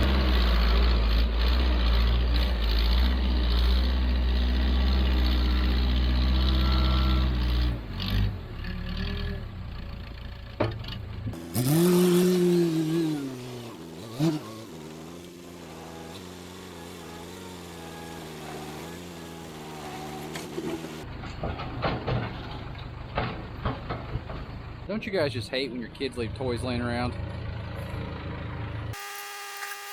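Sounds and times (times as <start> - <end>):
diesel engine revving: 0.0 - 21.2.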